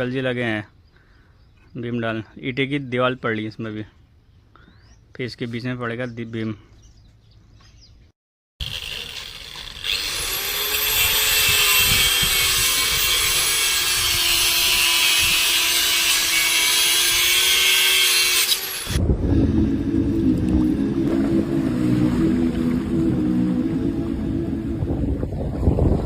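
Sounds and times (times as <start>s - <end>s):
power tool motor whining: 8.6s - 19.0s
low humming: 18.6s - 26.0s.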